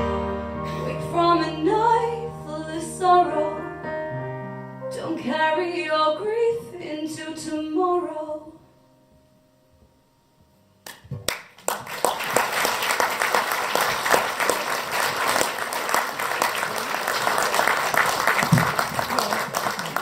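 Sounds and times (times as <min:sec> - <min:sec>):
audience applauding: 0:10.9 - 0:20.0.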